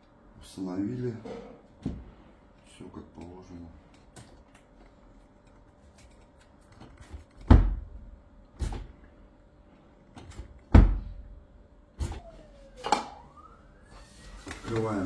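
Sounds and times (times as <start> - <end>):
dishwasher door thumps: 7.5 - 7.9, 10.7 - 11.1.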